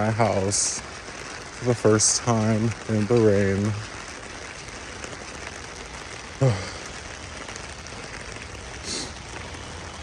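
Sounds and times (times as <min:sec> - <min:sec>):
steady rain falling: 0:00.0 - 0:10.0.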